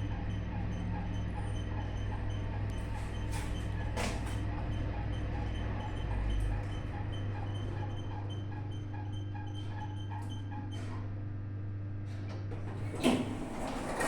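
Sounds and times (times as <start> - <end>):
elevator humming: 12.5 - 14.0.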